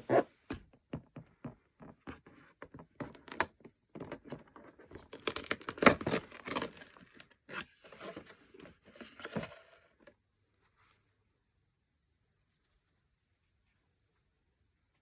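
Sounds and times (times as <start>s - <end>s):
packaging tearing and crinkling: 5.0s - 7.3s.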